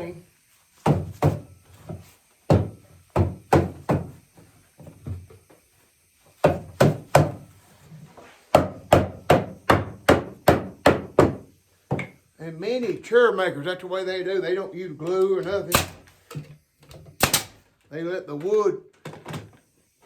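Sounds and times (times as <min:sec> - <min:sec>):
hammer striking wood: 0:00.8 - 0:01.5, 0:02.5 - 0:04.2, 0:06.4 - 0:07.4, 0:08.5 - 0:12.2.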